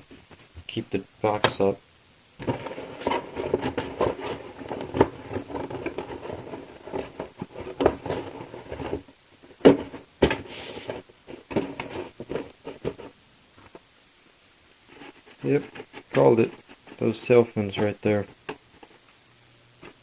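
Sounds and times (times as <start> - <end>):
cardboard lid scraping: 2.4 - 13.2
plastic parts rustling and clicking: 2.4 - 13.8.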